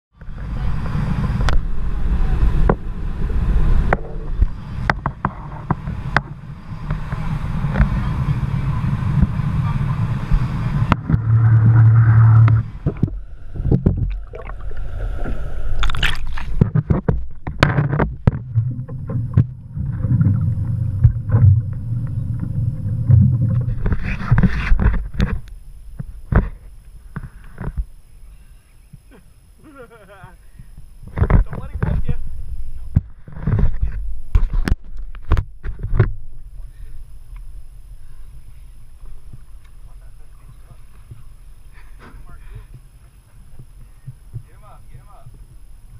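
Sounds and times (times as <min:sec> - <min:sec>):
boat engine and water rumble: 0:00.1 - 0:45.9
low hum: 0:00.1 - 0:45.9.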